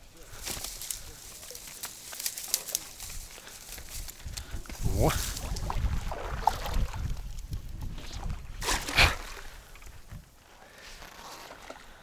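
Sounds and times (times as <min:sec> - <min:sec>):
wind buffeting microphone: 0:03.0 - 0:10.2.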